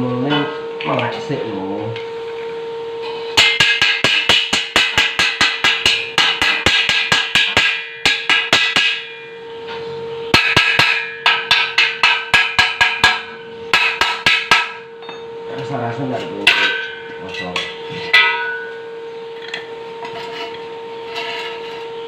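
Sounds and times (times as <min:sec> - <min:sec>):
steady hum: 0:00.0 - 0:22.0
metal tapping on steel tube: 0:10.4 - 0:15.2.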